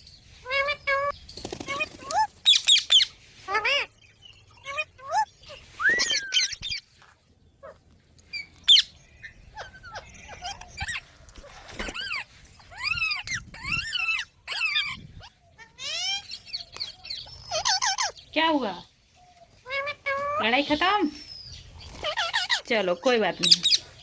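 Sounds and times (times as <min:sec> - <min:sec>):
parakeets squawking: 0:01.7 - 0:03.9, 0:04.5 - 0:06.8, 0:07.6 - 0:18.3, 0:19.7 - 0:20.9, 0:21.8 - 0:23.8.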